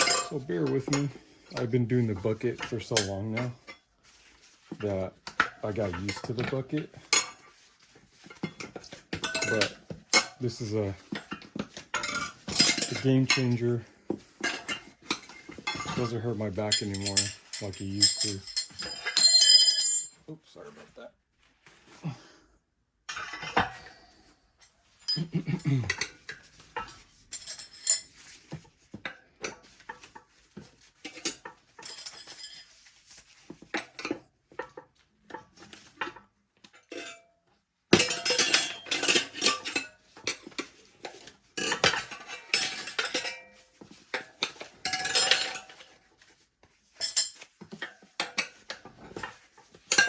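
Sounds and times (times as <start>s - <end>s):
tire irons clinking on wheel rim: 16.0s - 20.1s.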